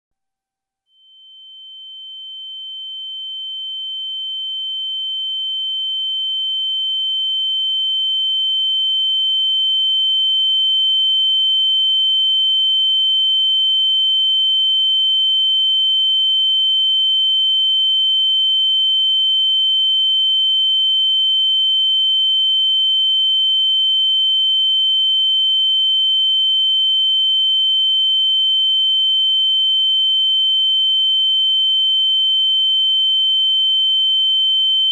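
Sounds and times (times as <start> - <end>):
faint lower tone: 0.9 - 6.4.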